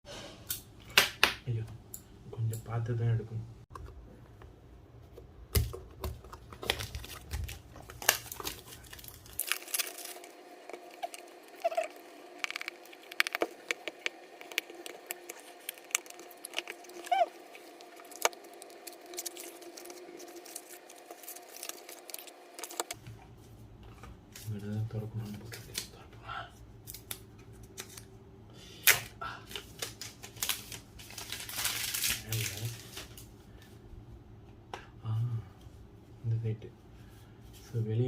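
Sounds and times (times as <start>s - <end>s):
faint steady hum: 0.1s - 38.0s
packaging rustling and clicking: 5.6s - 11.8s, 12.4s - 23.0s, 29.6s - 33.2s.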